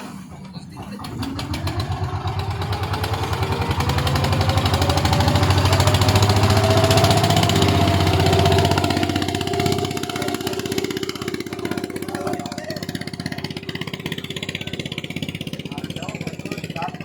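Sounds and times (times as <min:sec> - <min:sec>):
engine with fast pulsing beat: 0:00.8 - 0:17.0.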